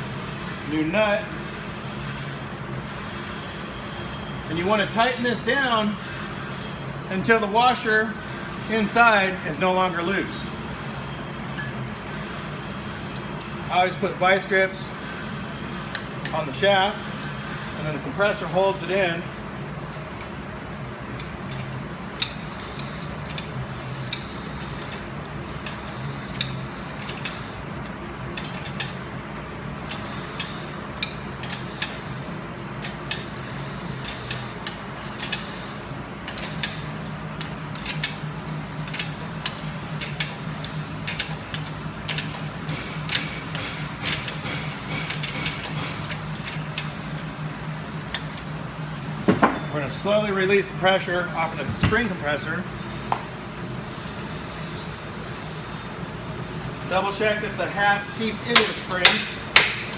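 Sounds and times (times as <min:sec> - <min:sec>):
ratchet wrench clicking: 0:21.2 - 0:29.0, 0:29.8 - 0:32.1, 0:32.8 - 0:35.7, 0:36.3 - 0:38.2, 0:38.8 - 0:47.5.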